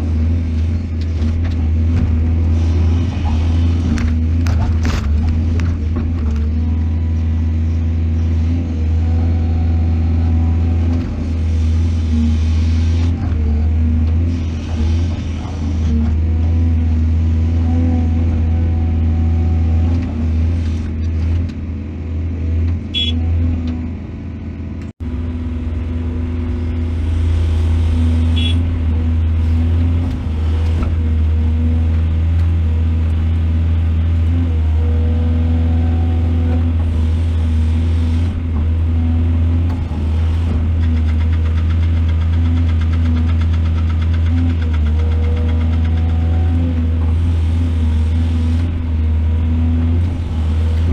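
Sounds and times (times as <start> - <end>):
diesel engine droning: 0.0 - 50.9.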